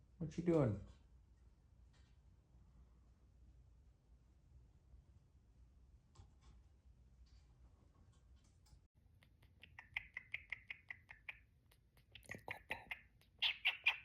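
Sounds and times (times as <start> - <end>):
cockatiel clicking: 9.0 - 14.0.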